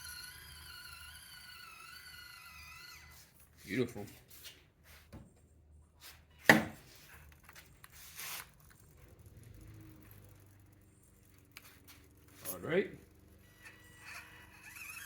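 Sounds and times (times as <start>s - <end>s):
faint small clicks and rubbing: 7.0s - 13.8s.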